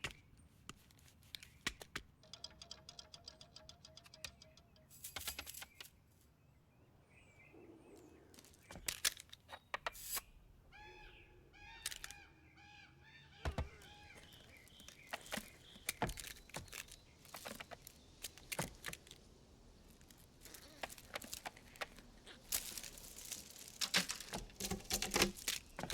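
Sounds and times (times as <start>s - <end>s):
clicks knocks and thumps: 13.4s - 25.9s.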